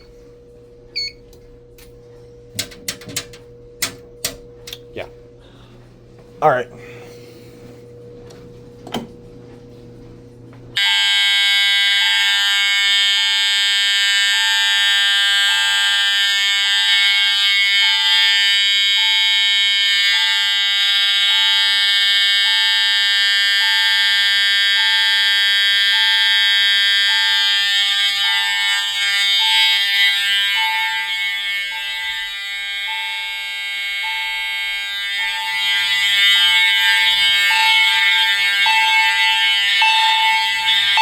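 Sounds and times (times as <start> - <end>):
alarm chime tone: 10.8 - 41.0
fire alarm horn blare: 10.8 - 41.0.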